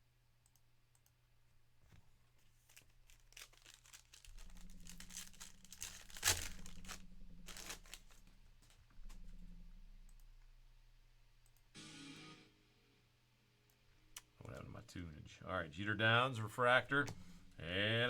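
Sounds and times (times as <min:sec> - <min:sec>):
wrapper tearing and crinkling: 0:02.5 - 0:08.8
sharp wrapper rip: 0:03.2 - 0:08.2.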